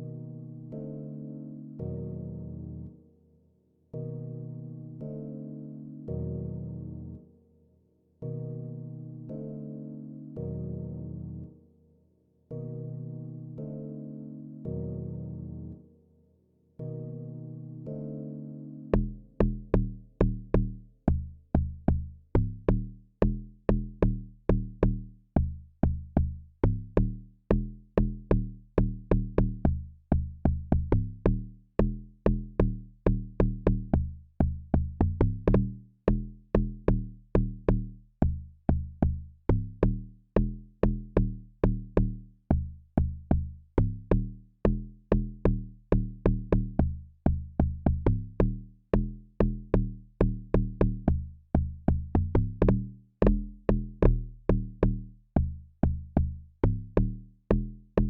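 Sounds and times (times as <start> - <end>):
punchy pitched log drum beat: 45.4 - 58.0.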